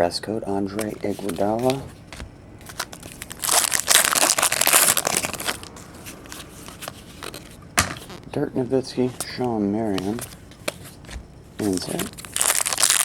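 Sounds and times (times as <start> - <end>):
wrapper crinkling: 2.6 - 8.2, 10.0 - 13.0
cards clicking: 9.2 - 13.0.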